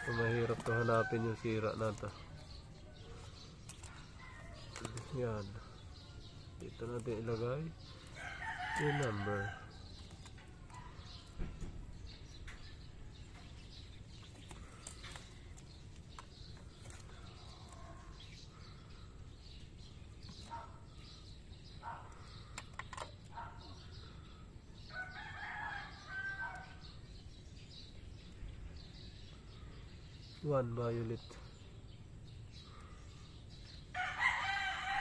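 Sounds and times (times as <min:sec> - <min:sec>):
rooster crowing: 0:08.2 - 0:09.7, 0:24.9 - 0:26.8, 0:33.9 - 0:35.0.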